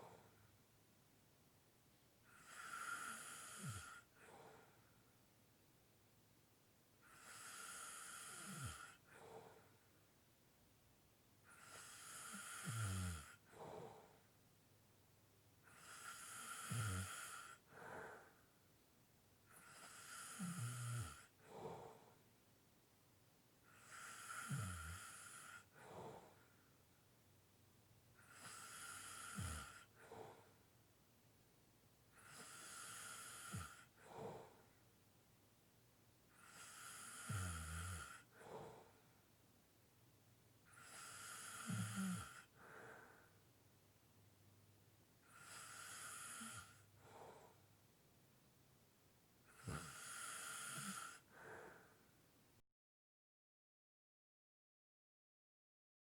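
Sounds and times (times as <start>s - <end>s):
person snoring lightly: 2.3s - 4.4s, 7.1s - 9.1s, 11.5s - 14.1s, 15.7s - 17.7s, 19.5s - 22.1s, 23.7s - 26.3s, 28.2s - 30.4s, 32.2s - 34.6s, 36.4s - 38.9s, 40.7s - 42.8s, 45.3s - 47.6s, 49.5s - 51.8s.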